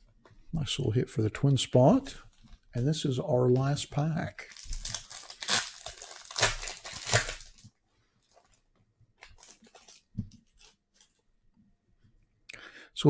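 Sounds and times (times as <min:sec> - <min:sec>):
wrapper tearing and crinkling: 0:04.4 - 0:07.7, 0:09.2 - 0:11.2
scratchy handling of cards: 0:09.2 - 0:11.3.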